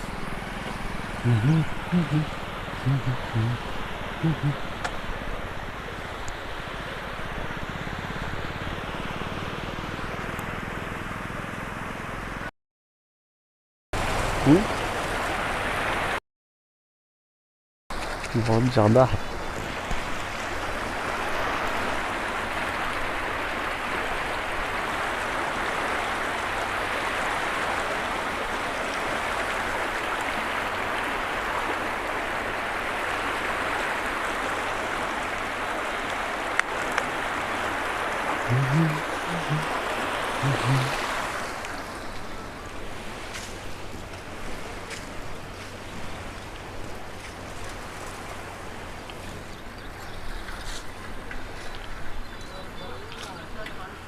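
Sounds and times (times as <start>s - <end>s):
floodwater roaring: 0.0s - 12.5s, 14.0s - 16.2s, 17.9s - 54.0s
short low sounds: 1.2s - 4.6s, 38.5s - 39.7s, 40.4s - 41.0s.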